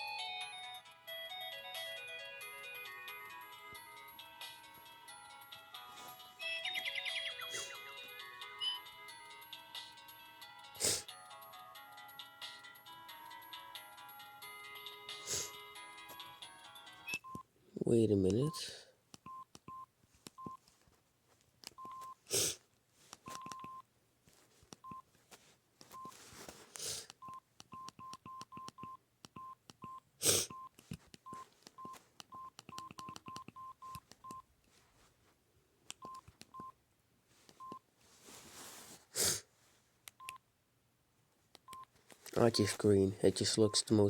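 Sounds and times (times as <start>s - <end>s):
phone key tone beeps: 6.4s - 7.8s, 17.0s - 17.4s, 19.3s - 20.6s, 21.8s - 22.2s, 23.3s - 23.8s, 27.2s - 34.4s, 36.0s - 36.7s, 43.4s - 43.9s.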